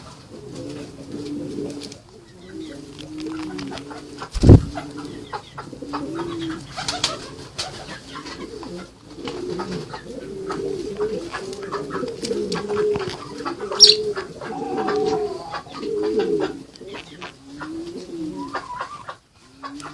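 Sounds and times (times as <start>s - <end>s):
birds cooing: 0.0s - 19.9s
sharp high-pitched bird call: 13.8s - 15.6s.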